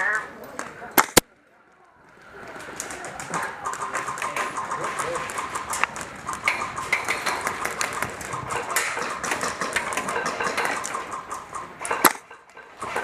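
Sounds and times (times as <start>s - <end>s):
airsoft rifle cracks: 0.6s - 1.3s.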